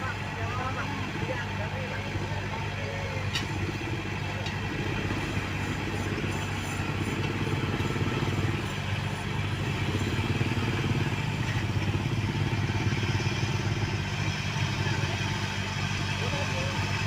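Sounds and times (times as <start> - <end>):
diesel machinery engines rumbling: 0.0 - 17.0
light machinery clatter: 2.4 - 13.1.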